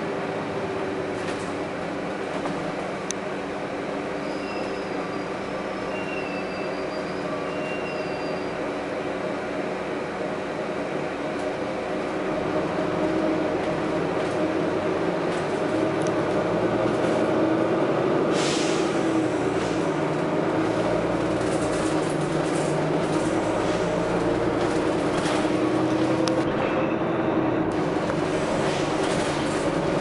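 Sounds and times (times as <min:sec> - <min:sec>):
bus engine drone with whine: 0:00.0 - 0:30.0
air hiss: 0:18.3 - 0:19.0.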